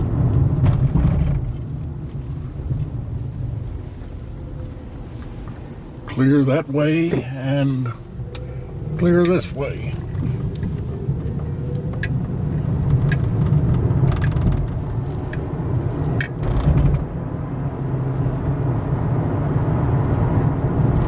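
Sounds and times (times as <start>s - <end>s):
car engine and road noise: 0.0s - 21.0s
faint irregular clicks: 8.2s - 17.0s.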